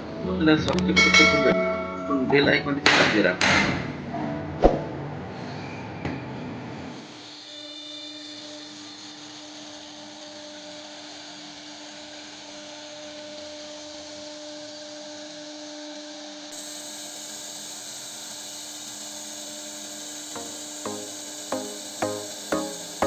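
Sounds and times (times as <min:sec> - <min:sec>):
router spindle whining: 0:16.6 - 0:23.0.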